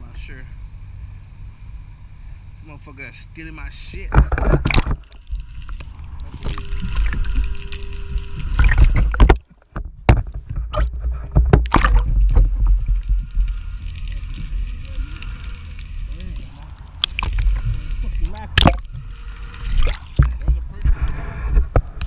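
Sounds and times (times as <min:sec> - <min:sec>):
boat rumbling and knocking: 0:08.4 - 0:13.1.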